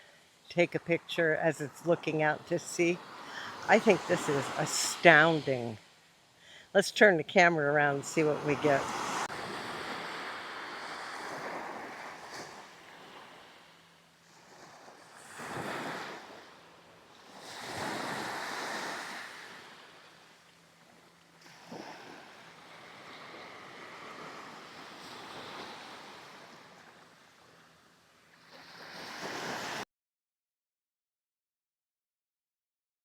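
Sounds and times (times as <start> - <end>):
waves breaking on sand: 0.7 - 5.8, 7.8 - 27.6, 28.4 - 29.8.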